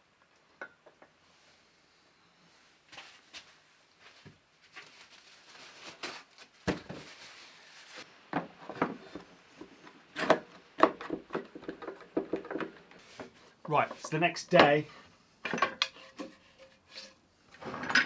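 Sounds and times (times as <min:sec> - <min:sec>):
wood and tools knocking and scraping: 0:08.2 - 0:18.0.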